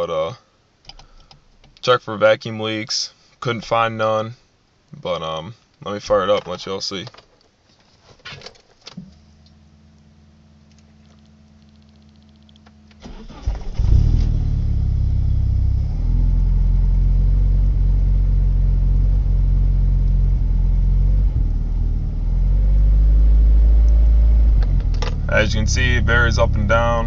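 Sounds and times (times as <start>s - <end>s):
engine cranking and starting: 13.0s - 14.6s.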